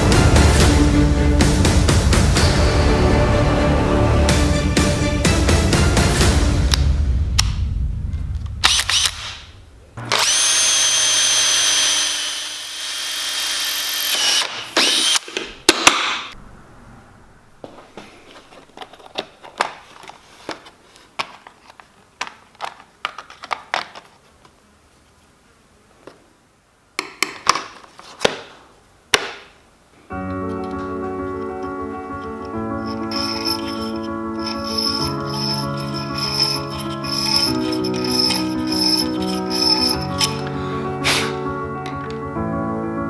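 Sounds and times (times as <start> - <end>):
electric power tool whine: 10.0 - 15.2.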